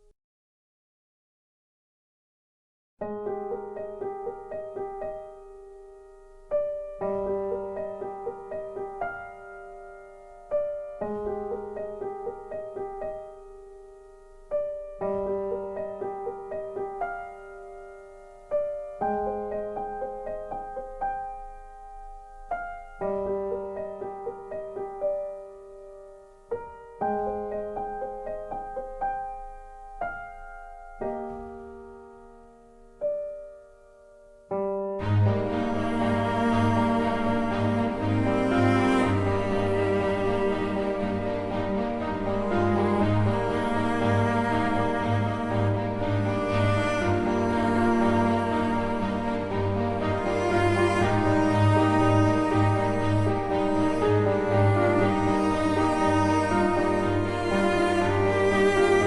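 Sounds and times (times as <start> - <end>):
calm piano music: 3.0 - 59.0.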